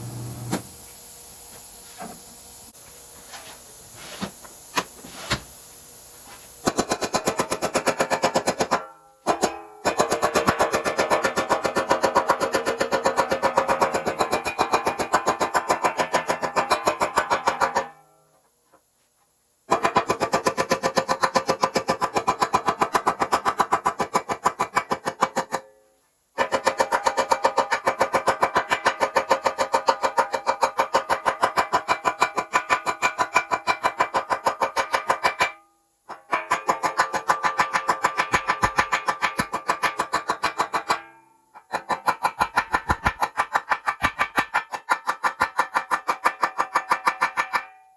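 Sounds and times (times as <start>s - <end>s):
arc welding pulsing buzz: 0.0s - 3.0s.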